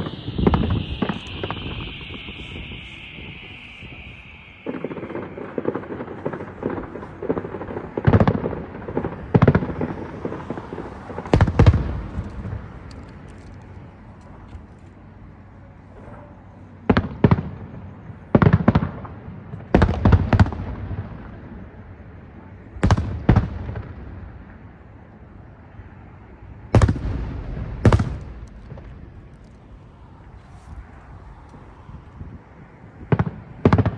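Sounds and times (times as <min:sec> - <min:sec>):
rapid firework crackle: 0:00.0 - 0:13.3, 0:26.8 - 0:31.7
firework shells bursting: 0:00.0 - 0:13.8, 0:26.8 - 0:30.9.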